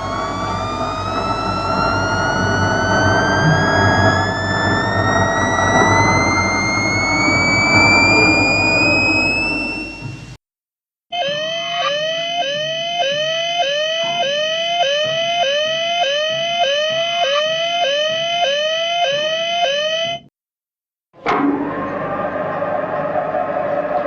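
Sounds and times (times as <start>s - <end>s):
electronic alarm warble: 0.0s - 10.3s, 11.1s - 20.3s
electronic downward sweep: 0.0s - 10.4s, 21.2s - 24.0s
steady high electronic tone: 0.0s - 10.4s.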